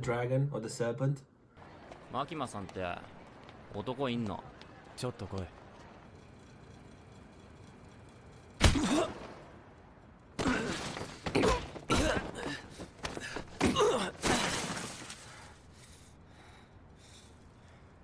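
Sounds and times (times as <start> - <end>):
punches landing: 8.6 - 9.4, 10.4 - 15.4.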